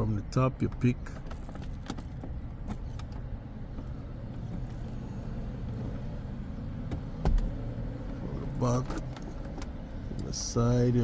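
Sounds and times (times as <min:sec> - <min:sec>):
car cabin hum: 0:00.0 - 0:11.0.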